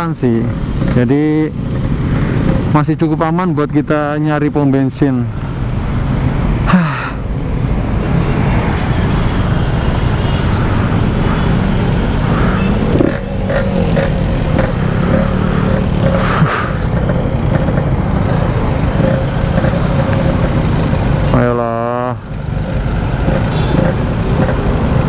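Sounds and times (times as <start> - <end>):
two-stroke motorcycle engine running: 9.8 - 25.0.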